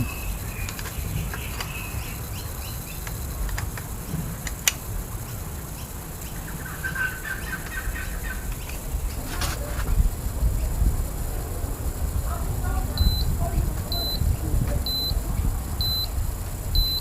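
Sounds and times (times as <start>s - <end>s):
sharp clicks: 0.0s - 6.4s
low background rumble: 0.0s - 17.0s.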